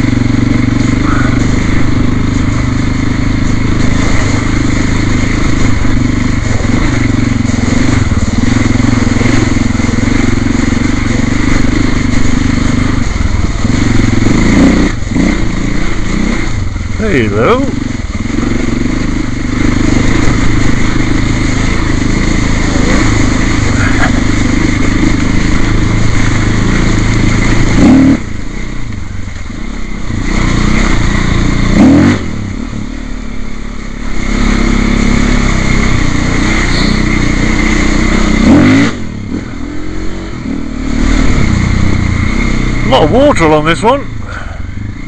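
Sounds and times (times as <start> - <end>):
motorcycle engine revving: 0.0 - 45.0.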